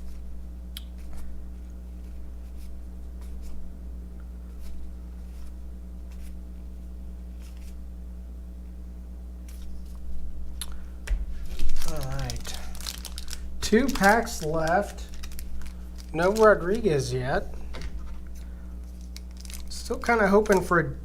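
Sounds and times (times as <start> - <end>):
cards flicking and rustling: 7.3 - 7.8, 9.4 - 10.0, 11.1 - 16.9, 17.6 - 20.8.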